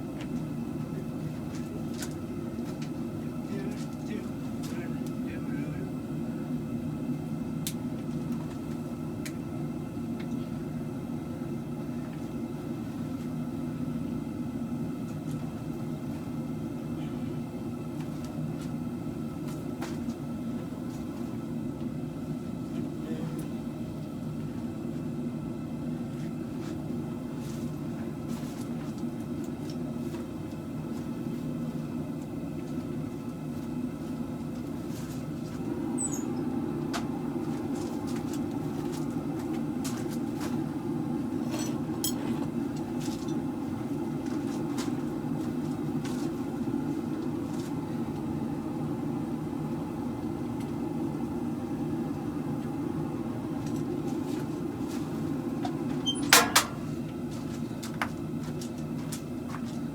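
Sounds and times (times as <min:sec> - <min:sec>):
loud metallic clank: 0:56.2 - 0:56.9.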